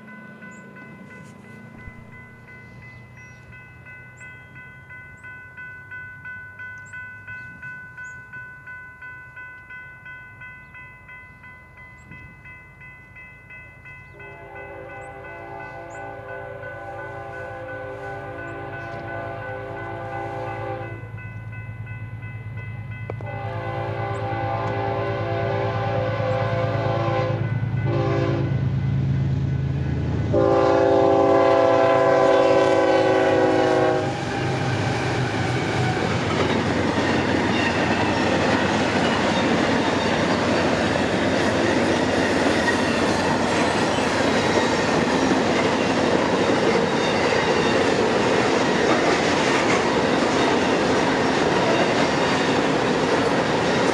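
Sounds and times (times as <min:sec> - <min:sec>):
train passing with rush: 0:00.0 - 0:53.9
train air horn blasts: 0:14.2 - 0:21.1, 0:23.1 - 0:28.7, 0:30.3 - 0:35.7.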